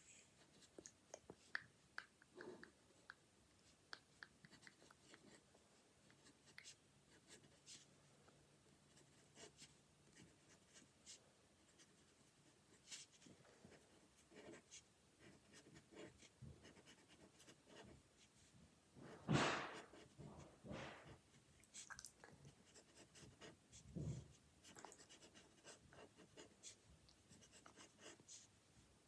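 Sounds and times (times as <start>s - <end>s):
marker scratching on paper: 14.2s - 18.3s, 19.5s - 20.2s, 22.6s - 28.5s.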